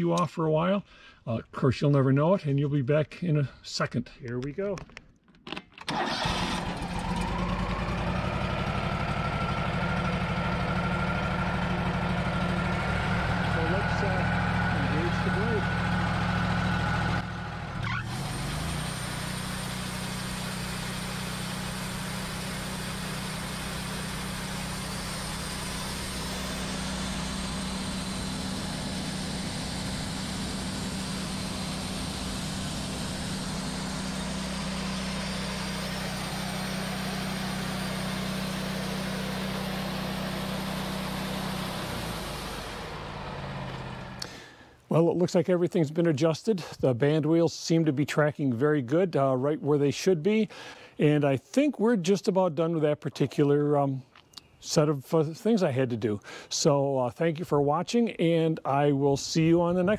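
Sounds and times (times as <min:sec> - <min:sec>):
band sawmill running: 0:05.9 - 0:44.6.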